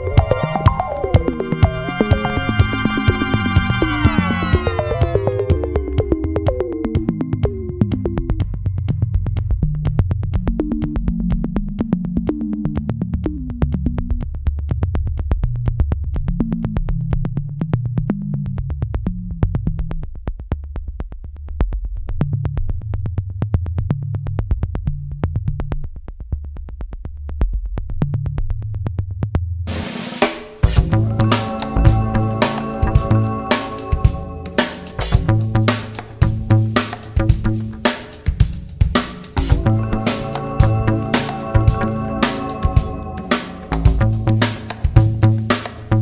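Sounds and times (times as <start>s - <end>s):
electronic music with synth bass: 0.0s - 9.0s, 30.7s - 38.1s, 39.0s - 46.0s.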